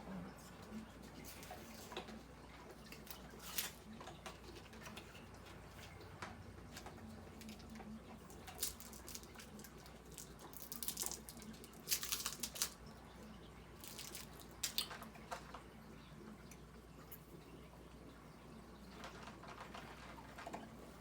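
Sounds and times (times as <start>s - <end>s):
item rustling and crinkling: 0.5s - 12.8s, 13.8s - 15.6s, 18.9s - 21.0s.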